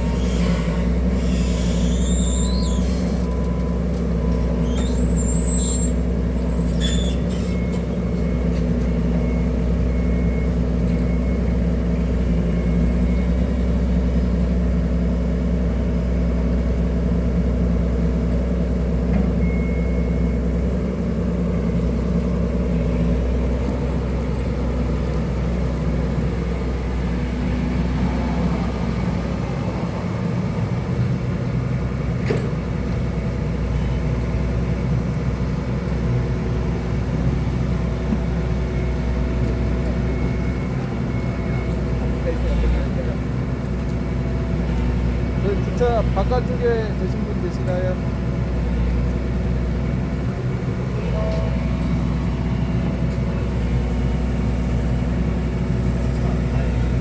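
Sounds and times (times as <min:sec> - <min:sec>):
high squeaks: 0:00.0 - 0:03.3, 0:04.6 - 0:07.7
excavator engine running: 0:00.0 - 0:57.0.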